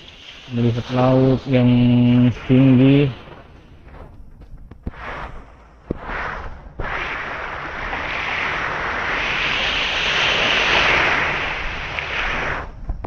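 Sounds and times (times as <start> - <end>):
waves washing on shore: 0.0 - 3.4, 7.0 - 12.7.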